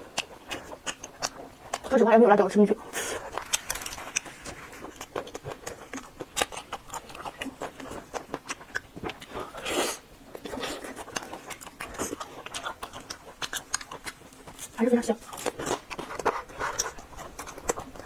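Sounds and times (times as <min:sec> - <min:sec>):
chewing crunches: 0:00.0 - 0:18.0.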